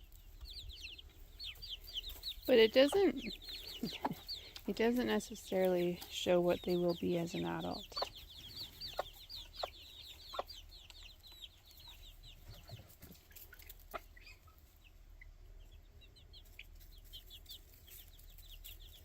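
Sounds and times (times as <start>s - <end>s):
chicks peeping: 0.0s - 19.0s.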